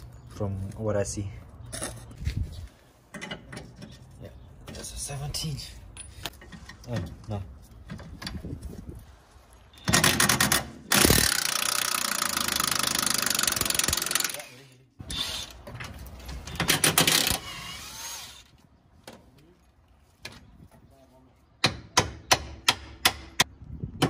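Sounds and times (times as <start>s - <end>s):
power tool rattling: 9.9s - 14.4s.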